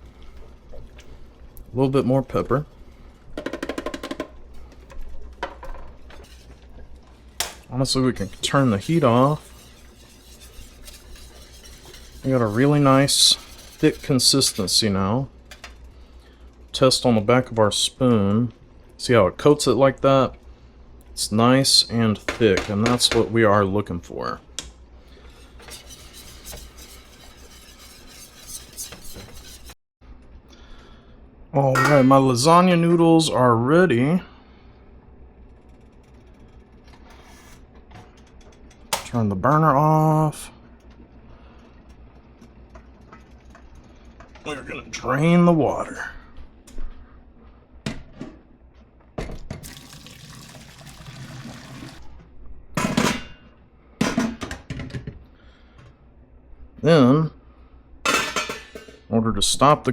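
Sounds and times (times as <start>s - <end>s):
pot knocking and clanking: 3.4s - 4.4s
spoon stirring thick sauce: 7.9s - 14.8s, 25.4s - 29.8s
water pouring into a sink: 49.6s - 52.0s.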